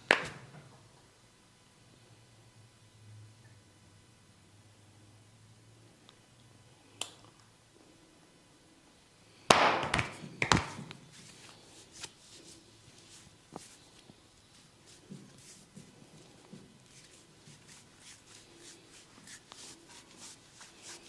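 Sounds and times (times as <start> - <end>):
cracks and pops from head massage: 9.5 - 11.0.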